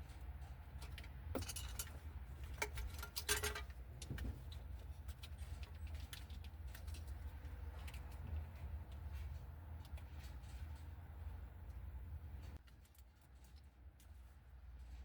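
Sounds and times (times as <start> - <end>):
steady low hum: 0.0 - 15.0
metal tools clinking and jangling: 0.8 - 4.1.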